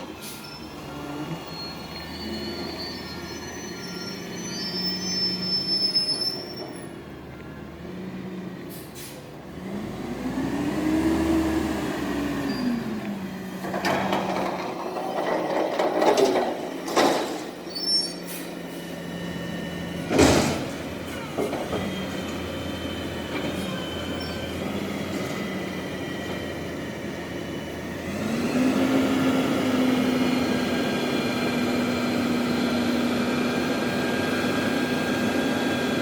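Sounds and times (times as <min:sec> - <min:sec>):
garbage truck engine revving: 0:09.5 - 0:17.6, 0:18.3 - 0:36.0
dumpster slamming bangs: 0:20.0 - 0:21.4.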